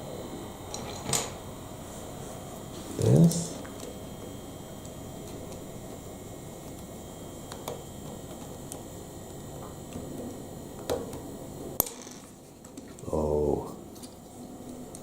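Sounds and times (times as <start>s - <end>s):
steady background hiss: 0.0s - 3.7s.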